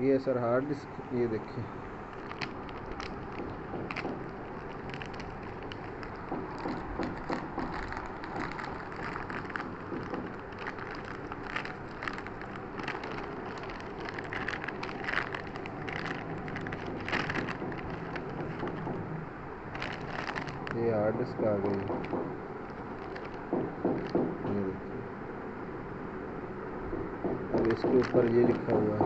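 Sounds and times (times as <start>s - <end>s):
steady background hiss: 0.0s - 29.0s
packaging crinkling: 2.0s - 24.6s, 27.3s - 29.0s
small clicks and rustles: 2.1s - 19.1s, 19.7s - 20.9s, 21.5s - 24.6s, 27.5s - 29.0s.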